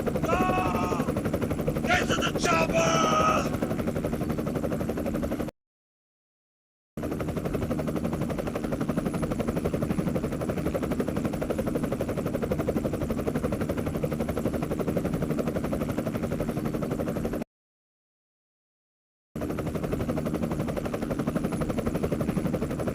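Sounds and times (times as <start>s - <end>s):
helicopter rotor chopping: 0.0s - 5.4s, 7.0s - 17.4s.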